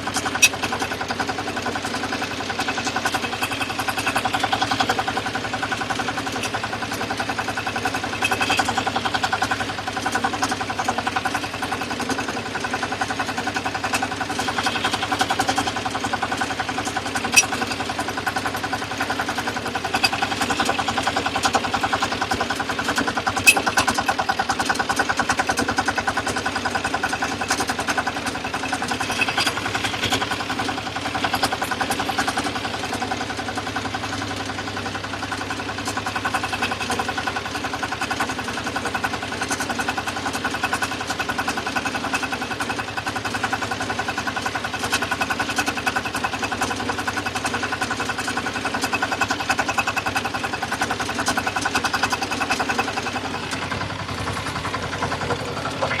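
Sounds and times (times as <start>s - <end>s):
combine harvester running: 0.0s - 56.0s.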